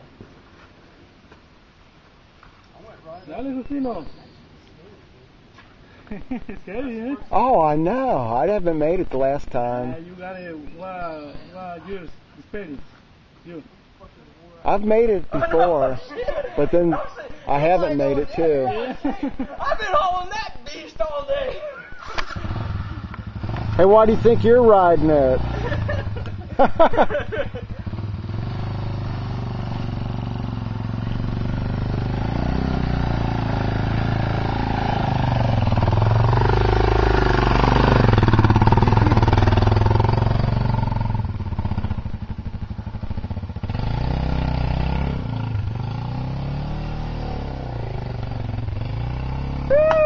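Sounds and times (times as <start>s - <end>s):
dirt bike engine revving: 22.0s - 49.9s.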